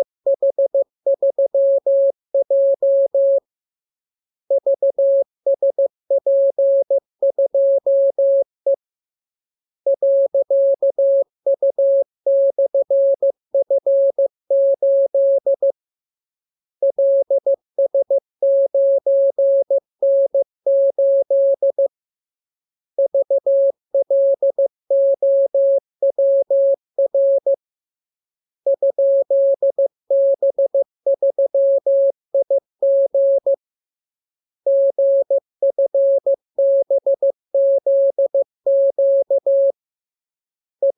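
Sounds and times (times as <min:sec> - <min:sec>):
morse code beeps: 0:34.7 - 0:39.7.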